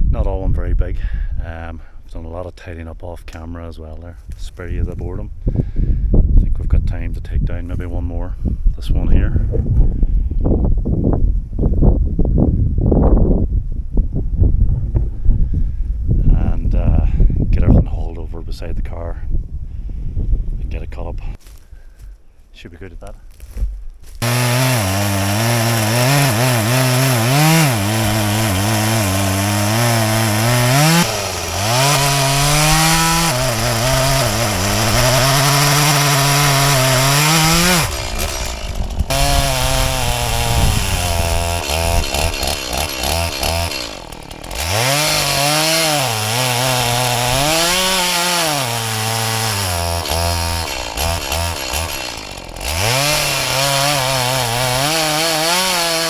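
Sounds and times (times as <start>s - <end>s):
chainsaw cutting wood: 24.1s - 56.0s.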